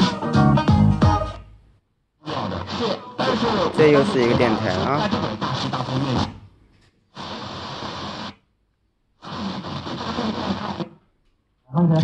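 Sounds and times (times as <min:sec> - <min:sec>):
faint radio programme sound: 0:02.2 - 0:06.3
radio static hiss: 0:02.2 - 0:06.5, 0:07.1 - 0:08.5, 0:09.2 - 0:11.0.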